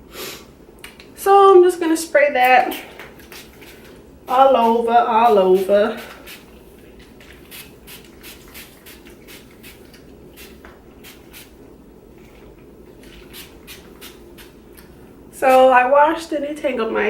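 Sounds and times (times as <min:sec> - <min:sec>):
spray bottle hissing squirts: 0:03.0 - 0:11.6, 0:13.0 - 0:14.6.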